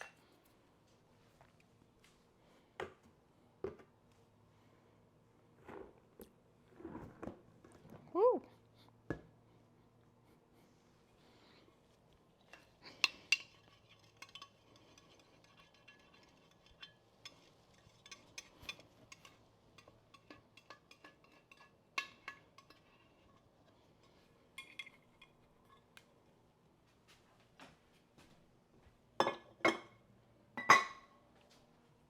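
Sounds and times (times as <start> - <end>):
glass containers clinking: 29.2 - 30.0, 30.6 - 31.1.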